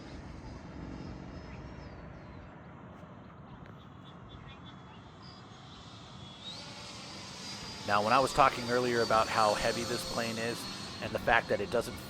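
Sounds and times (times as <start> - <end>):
distant model jet hiss: 5.2 - 12.0.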